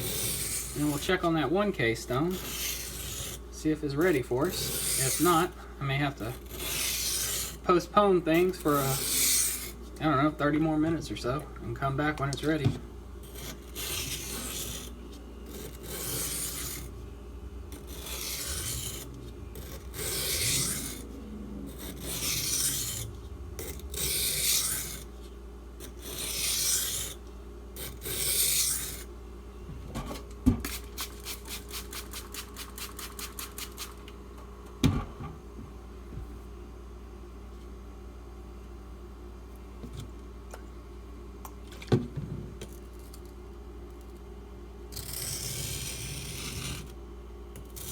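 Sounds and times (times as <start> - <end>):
knife rasping on water stone: 13.2 - 14.9, 15.5 - 16.9, 17.7 - 21.0, 21.7 - 25.1.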